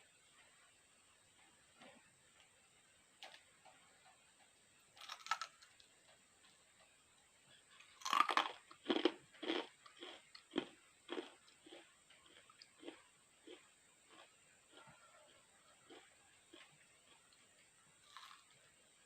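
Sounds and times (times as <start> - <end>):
chewing crunchy food: 5.0 - 6.9, 7.7 - 18.7.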